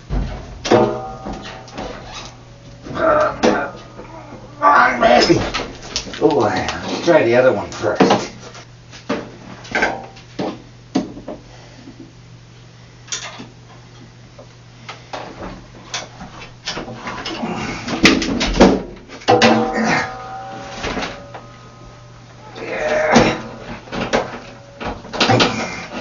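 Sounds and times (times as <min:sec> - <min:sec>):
metal knocks and clanks: 0:00.0 - 0:06.2, 0:18.0 - 0:26.0
steady low hum: 0:00.0 - 0:26.0
metallic ringing: 0:00.6 - 0:05.9, 0:19.3 - 0:26.0.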